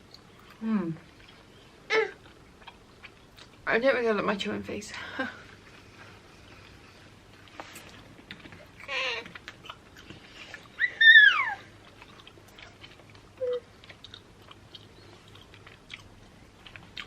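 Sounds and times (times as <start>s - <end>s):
person chewing candy: 5.5s - 17.0s.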